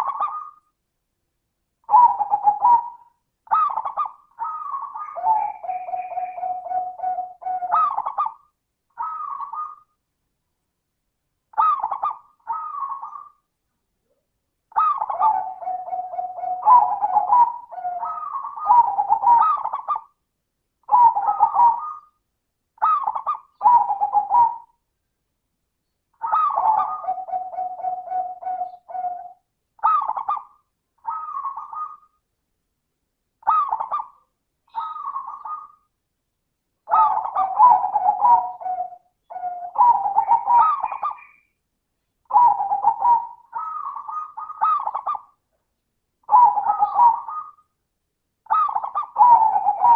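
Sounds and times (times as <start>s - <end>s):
dove cooing: 0.0s - 0.6s, 1.8s - 10.0s, 11.5s - 13.5s, 14.1s - 20.2s, 20.8s - 22.2s, 22.8s - 24.8s, 26.2s - 32.2s, 33.4s - 35.9s, 36.9s - 41.5s, 42.2s - 45.4s, 46.2s - 47.7s, 48.4s - 49.9s.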